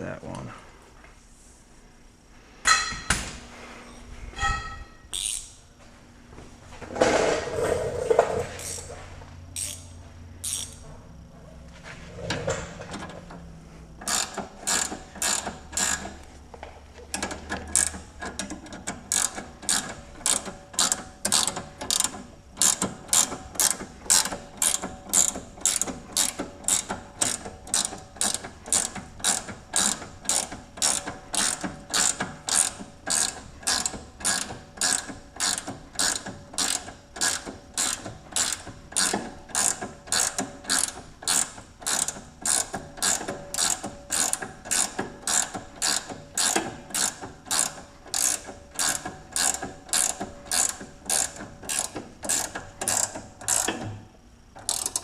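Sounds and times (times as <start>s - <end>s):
ratchet wrench clicking: 5.1s - 5.6s, 8.6s - 8.9s, 9.6s - 10.8s, 14.0s - 16.3s, 17.1s - 53.8s, 54.6s - 55.0s.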